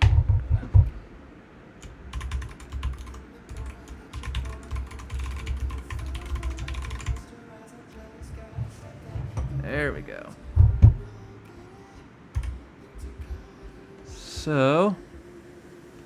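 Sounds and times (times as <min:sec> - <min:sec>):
typing on computer keyboard: 0:01.8 - 0:07.2, 0:12.3 - 0:12.6.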